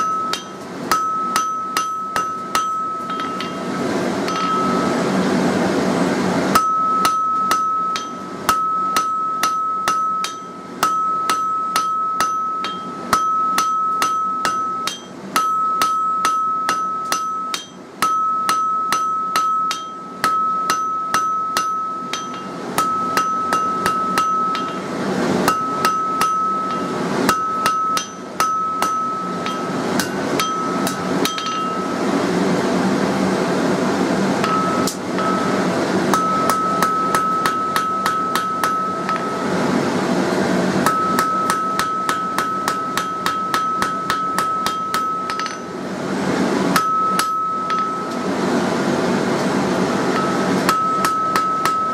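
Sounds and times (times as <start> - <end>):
anvil ringing: 0.0 - 5.0, 6.5 - 32.0, 34.4 - 39.6, 40.8 - 45.7, 46.7 - 48.2, 50.1 - 51.9
hammer striking steel on anvil: 0.0 - 5.0, 6.5 - 32.0, 34.4 - 39.8, 40.8 - 45.8, 46.7 - 48.3, 50.1 - 51.9.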